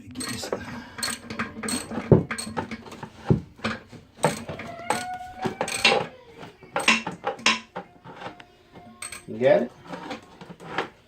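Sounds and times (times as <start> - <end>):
wrench clinking on metal bolt: 0.2 - 3.0, 3.6 - 6.1, 6.8 - 8.3, 9.0 - 9.4.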